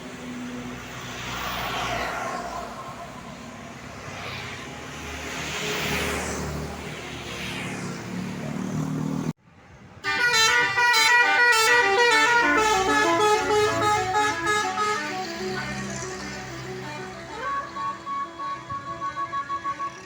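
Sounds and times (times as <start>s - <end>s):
vehicle noise: 0.0s - 20.0s
multi-tone bus horn melody: 10.0s - 20.0s.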